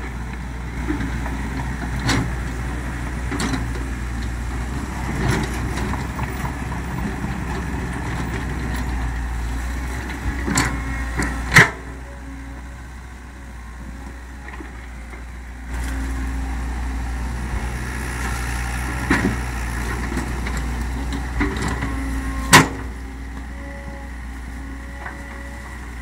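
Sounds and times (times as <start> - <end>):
excavator diesel engine humming: 0.0 - 26.0.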